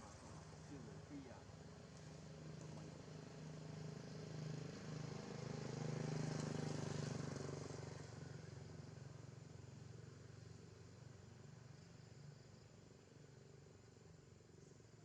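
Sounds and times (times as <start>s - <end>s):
vehicle passing by: 2.8s - 9.0s.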